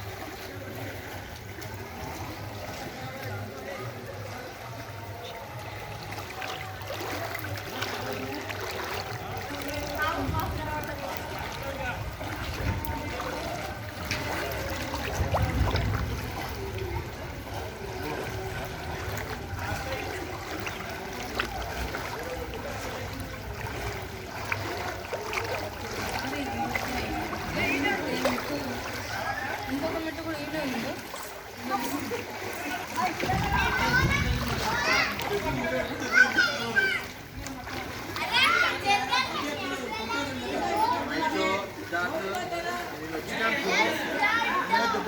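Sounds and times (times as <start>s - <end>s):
faint voices: 0.0s - 45.0s
floodwater flowing: 0.0s - 45.0s.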